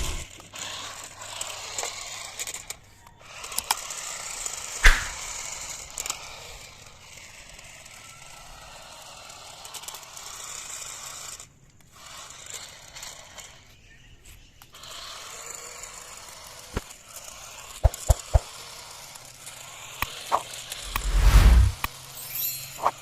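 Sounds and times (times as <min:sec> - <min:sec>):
toy electric motor whirring: 0:00.0 - 0:21.0
sharp knock: 0:04.8 - 0:05.2.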